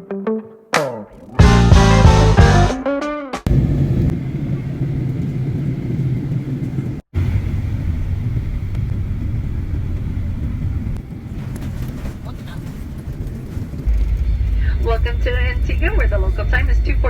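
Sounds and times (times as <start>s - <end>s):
vehicle engine rumbling: 3.5s - 17.0s.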